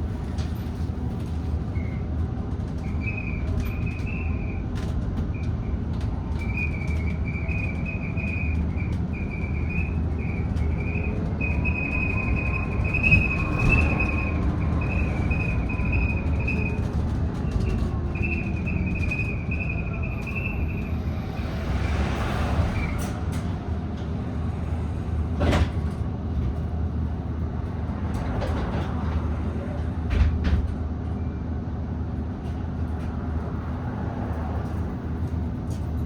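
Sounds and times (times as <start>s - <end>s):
bus road rumble: 0.0s - 36.0s.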